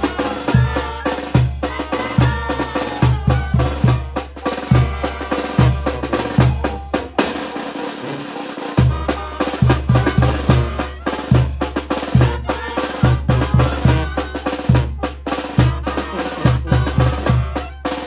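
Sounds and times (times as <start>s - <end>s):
brass band playing: 0.0s - 18.0s.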